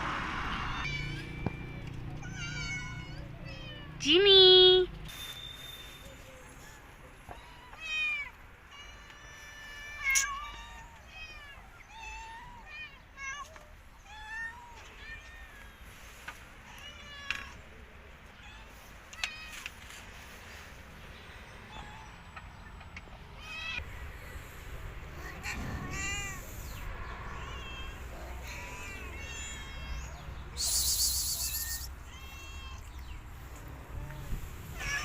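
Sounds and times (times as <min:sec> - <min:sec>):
cats meowing: 0:00.7 - 0:04.8, 0:06.2 - 0:20.4, 0:25.1 - 0:35.0.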